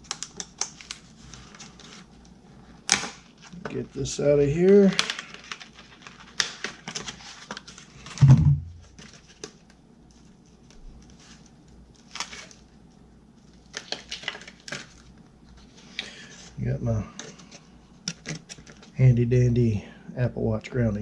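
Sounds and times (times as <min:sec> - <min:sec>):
short low thump: 0:08.2 - 0:08.8.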